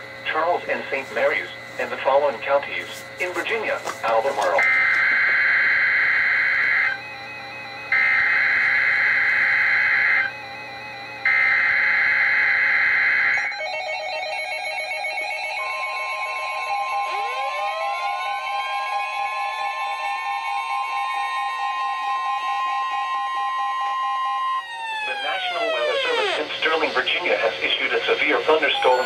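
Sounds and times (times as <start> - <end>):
steady warning alarm tone: 0.0 - 29.0
multi-tone receiver alarms: 0.2 - 29.0
warbling data tone bursts: 24.8 - 29.0.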